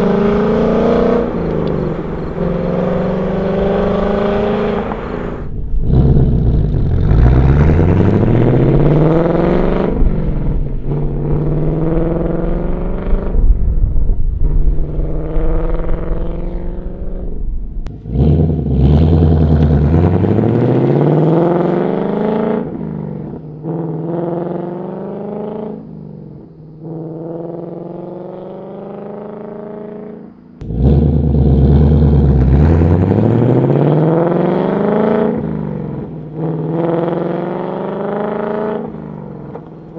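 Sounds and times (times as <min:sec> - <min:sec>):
car exhaust under hard acceleration: 0:00.0 - 0:29.8, 0:30.6 - 0:39.9.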